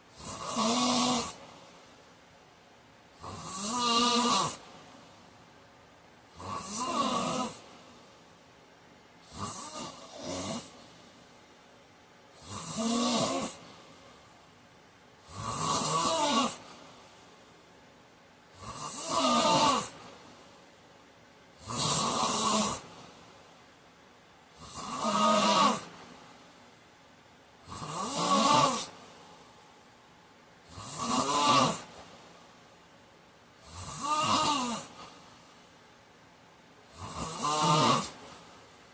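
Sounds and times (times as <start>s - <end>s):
man snoring loudly: 0.1s - 1.4s, 3.2s - 4.6s, 6.3s - 7.7s, 9.2s - 10.8s, 12.4s - 13.7s, 15.2s - 16.7s, 18.5s - 20.0s, 21.6s - 23.0s, 24.6s - 26.0s, 27.6s - 29.0s, 30.7s - 32.0s, 33.6s - 35.0s, 36.9s - 38.2s.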